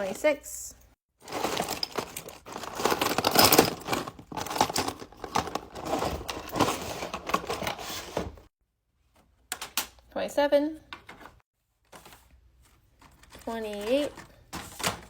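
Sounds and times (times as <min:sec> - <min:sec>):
crinkling and rustling: 0:01.2 - 0:08.5, 0:11.0 - 0:15.0.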